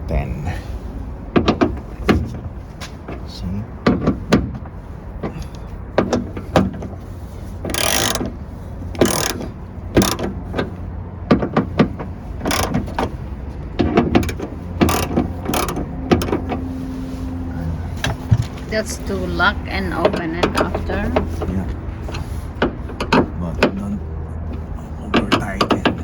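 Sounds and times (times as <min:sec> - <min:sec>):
ratchet wrench ratcheting: 0:07.6 - 0:10.5, 0:12.4 - 0:13.2, 0:13.8 - 0:16.5
ratchet wrench clicking: 0:07.7 - 0:08.3, 0:09.0 - 0:10.4, 0:12.4 - 0:13.0, 0:14.2 - 0:16.4.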